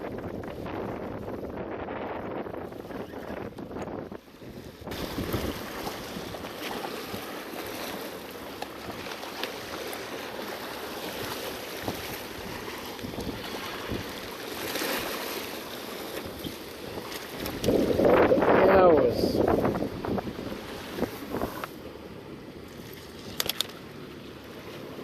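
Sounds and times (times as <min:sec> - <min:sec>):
wind buffeting microphone: 0:00.0 - 0:07.6, 0:08.7 - 0:21.7
waves on rocky shore: 0:00.0 - 0:25.0
small clicks: 0:23.3 - 0:23.8.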